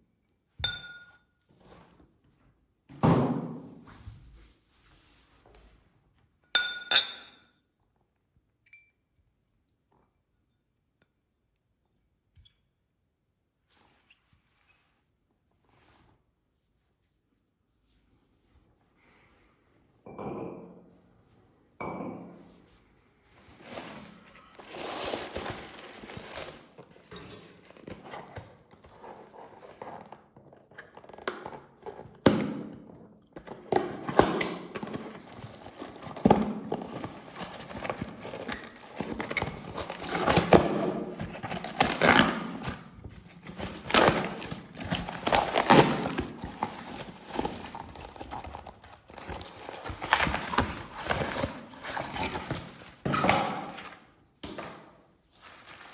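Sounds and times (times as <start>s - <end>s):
packaging rustling and crinkling: 23.4s - 32.2s, 33.4s - 54.1s, 55.3s - 55.9s.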